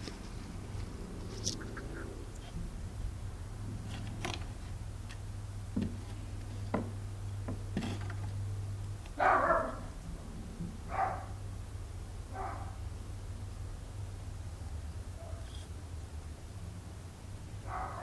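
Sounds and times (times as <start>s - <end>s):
steady low hum: 0.0s - 18.0s
dog barking: 9.2s - 9.9s, 10.9s - 11.4s, 12.3s - 12.8s, 15.2s - 15.5s, 17.6s - 18.0s.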